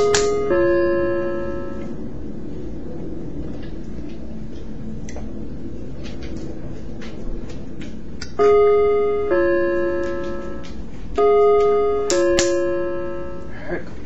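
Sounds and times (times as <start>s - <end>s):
doorbell ding-dong chime: 0.0s - 2.0s, 8.4s - 13.5s.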